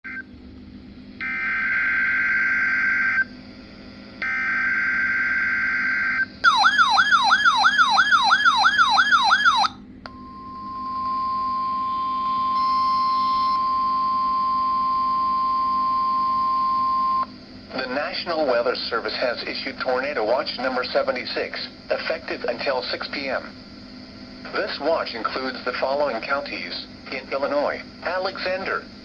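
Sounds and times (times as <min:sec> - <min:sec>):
warbling alarm: 0:01.2 - 0:03.3, 0:04.2 - 0:17.3
steady alert tone: 0:06.5 - 0:09.7.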